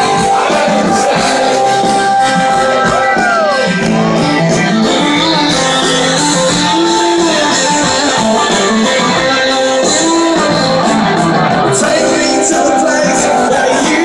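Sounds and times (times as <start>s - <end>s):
live rock band playing: 0.0s - 14.0s
strummed guitars: 0.0s - 14.0s.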